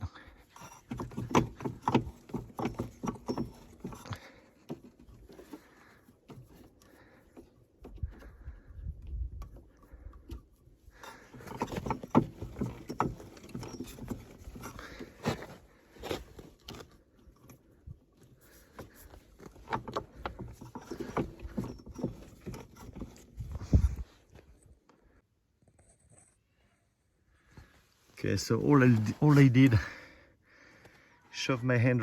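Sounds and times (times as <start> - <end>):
drive belt scraping and clicking: 0.2 - 8.6, 9.4 - 17.6, 18.2 - 24.1.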